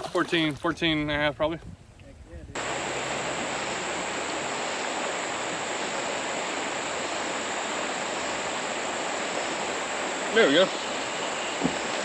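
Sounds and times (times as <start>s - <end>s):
creek water rushing: 2.6s - 12.0s.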